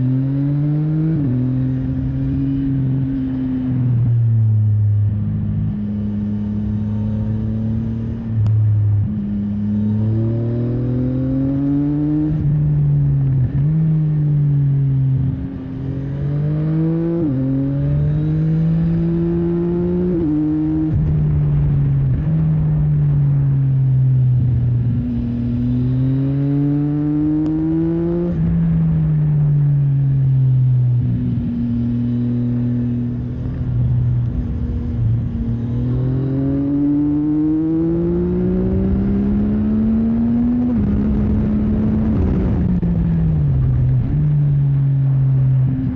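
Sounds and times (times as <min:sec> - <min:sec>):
motorcycle engine revving: 0:00.0 - 0:45.9
wind rush: 0:40.4 - 0:45.9.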